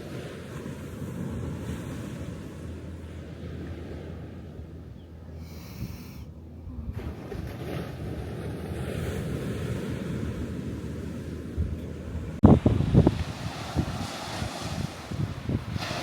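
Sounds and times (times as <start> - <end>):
surf washing on beach: 0.0 - 6.1, 6.9 - 16.0
wind buffeting microphone: 0.0 - 16.0.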